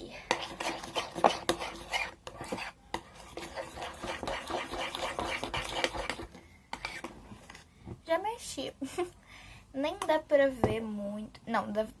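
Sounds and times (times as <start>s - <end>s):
slime stirred in container: 0.2s - 7.6s.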